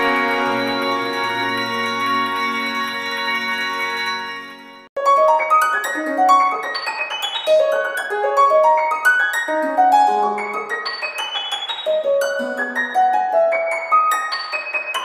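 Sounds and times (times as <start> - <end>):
sustained organ-like chord: 0.0 - 4.9
rising piano-like arpeggios: 0.0 - 14.5.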